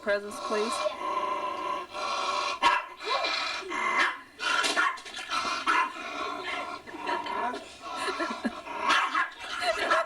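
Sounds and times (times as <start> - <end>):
dog barking: 2.6 - 3.0, 4.0 - 6.0, 8.9 - 10.0.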